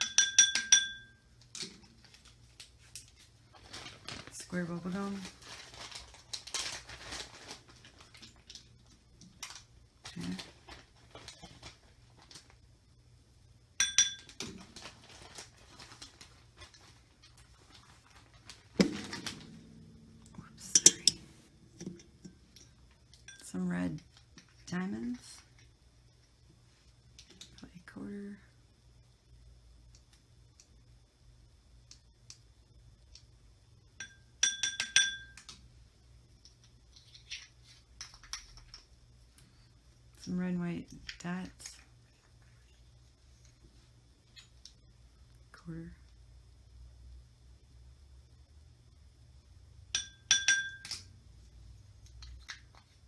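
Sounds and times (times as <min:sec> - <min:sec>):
metal spoon clinking on container: 0:00.0 - 0:01.2, 0:13.8 - 0:14.4, 0:19.8 - 0:23.5, 0:34.0 - 0:35.4, 0:50.0 - 0:51.0
glitter pattering: 0:17.6 - 0:23.6.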